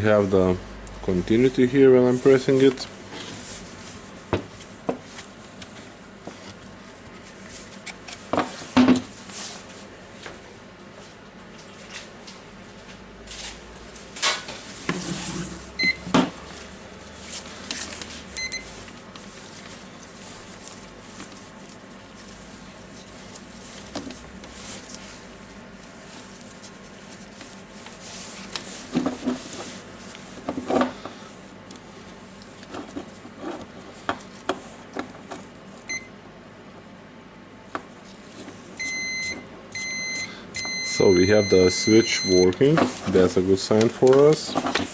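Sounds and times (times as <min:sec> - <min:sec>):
multimeter beeps: 0:15.8 - 0:16.0, 0:18.4 - 0:18.7, 0:35.9 - 0:36.1, 0:38.8 - 0:42.6.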